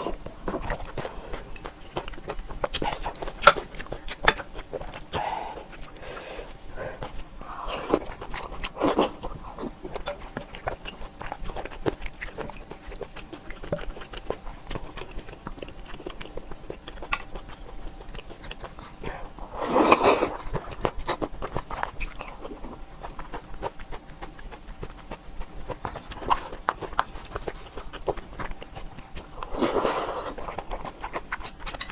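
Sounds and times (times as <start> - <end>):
person chewing and biting: 0.0 - 31.9
wet mouth clicks and crunches: 30.2 - 31.9.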